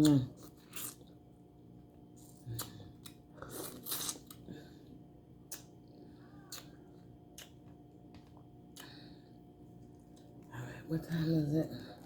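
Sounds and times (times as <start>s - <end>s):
mouth smacks while eating: 2.2s - 4.5s, 5.4s - 5.7s, 6.4s - 9.0s
person slurping: 3.4s - 4.4s.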